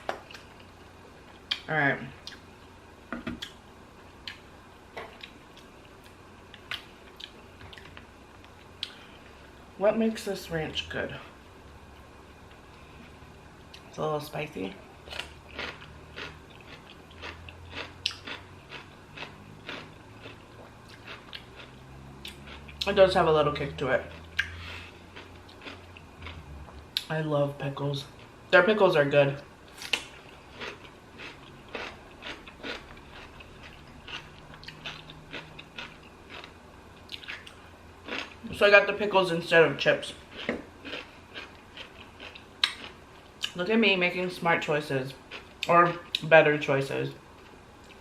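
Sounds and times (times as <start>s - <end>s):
person chewing food: 5.1s - 9.4s, 14.8s - 23.0s, 24.0s - 27.1s, 29.7s - 38.4s, 40.2s - 43.6s.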